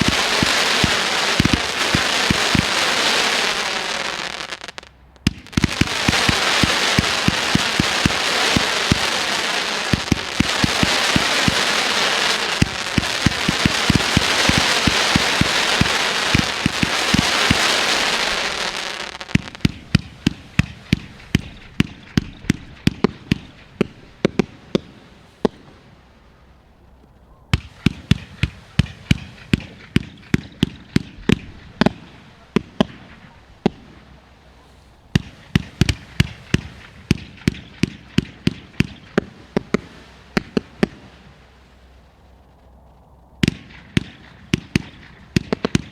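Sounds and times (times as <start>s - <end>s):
soft firework shots: 0.0s - 26.2s, 27.5s - 45.9s
fireworks hissing: 0.0s - 26.5s.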